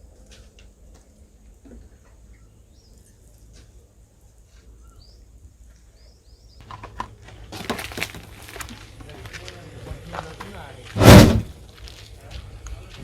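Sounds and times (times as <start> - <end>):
knocks and clatter: 11.0 - 11.5
low rumble: 11.0 - 11.5.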